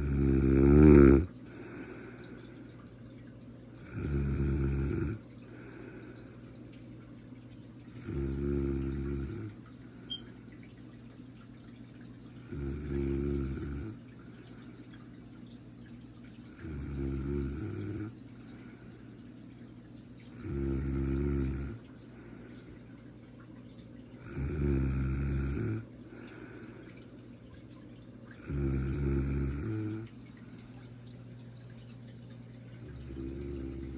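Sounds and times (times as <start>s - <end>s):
person snoring: 0.0s - 1.3s, 3.8s - 5.2s, 8.0s - 9.5s, 12.5s - 14.0s, 16.6s - 18.1s, 20.4s - 21.8s, 24.2s - 25.9s, 28.4s - 30.1s, 32.8s - 33.9s.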